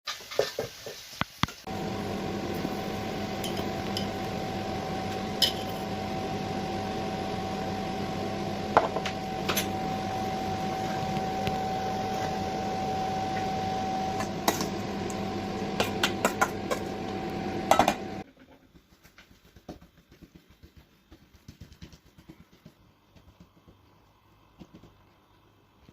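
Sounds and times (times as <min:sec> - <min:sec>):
kitchen appliance motor hum: 0:01.7 - 0:18.2.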